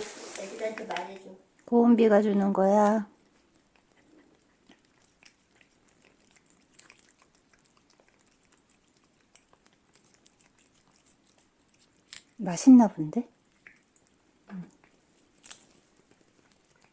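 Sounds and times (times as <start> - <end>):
cat licking and chewing: 0.0 - 16.9.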